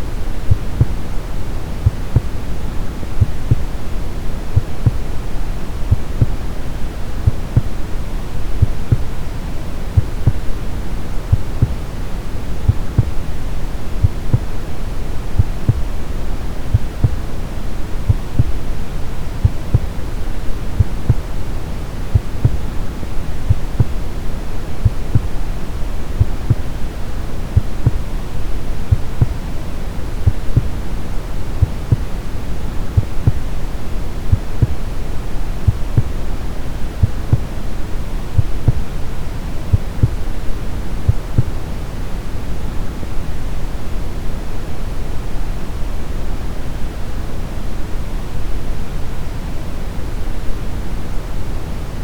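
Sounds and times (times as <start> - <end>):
soft low heartbeat thumps: 0.0 - 6.5, 7.1 - 7.9, 8.5 - 9.2, 9.9 - 11.9, 12.6 - 18.8, 19.4 - 21.4, 22.0 - 25.4, 26.1 - 26.8, 27.4 - 29.5, 30.2 - 31.0, 31.6 - 32.2, 32.9 - 33.5, 34.2 - 35.0, 35.6 - 36.2, 36.9 - 37.6, 38.4 - 39.0, 39.7 - 40.3, 41.0 - 41.5
deep brown noise hiss: 0.0 - 52.0.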